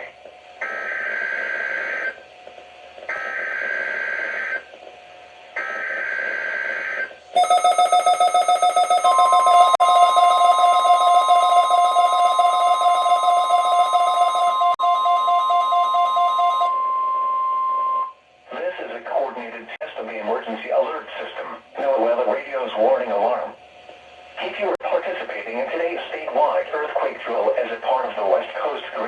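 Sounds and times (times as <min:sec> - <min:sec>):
steady warning alarm tone: 0:00.0 - 0:02.2, 0:03.1 - 0:04.7, 0:05.6 - 0:18.2
pulsing electronic alarm: 0:00.6 - 0:02.2, 0:03.1 - 0:04.6, 0:05.6 - 0:18.2.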